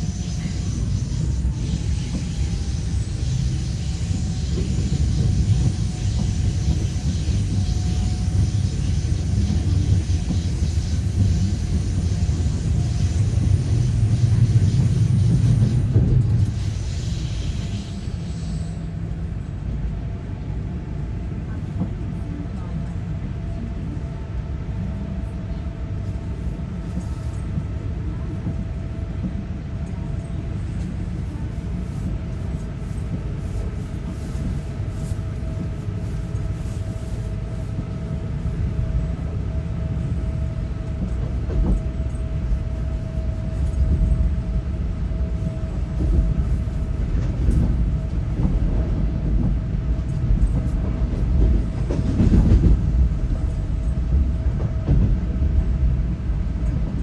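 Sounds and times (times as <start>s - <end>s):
train rumbling on rails: 0.0s - 57.0s.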